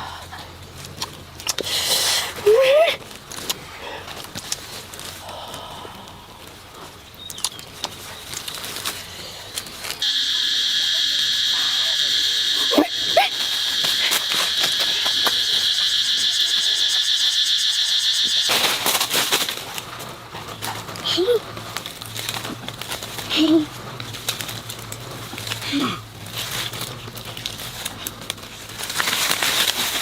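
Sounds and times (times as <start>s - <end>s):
cicada buzzing: 10.0s - 19.7s.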